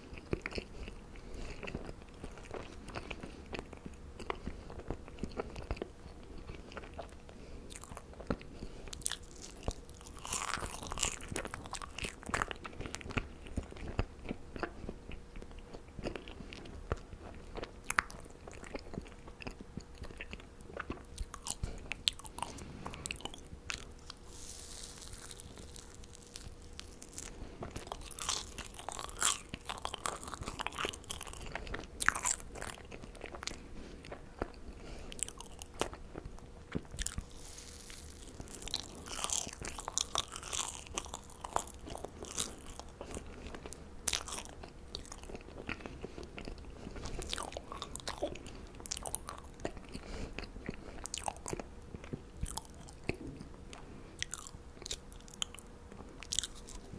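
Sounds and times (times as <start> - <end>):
marshmallows being chewed: 0.0 - 56.9.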